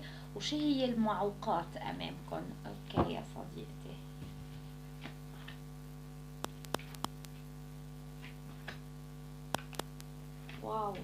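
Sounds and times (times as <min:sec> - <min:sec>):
electrical mains hum: 0:00.0 - 0:11.0
sharp clicks: 0:06.4 - 0:07.5, 0:09.5 - 0:10.1.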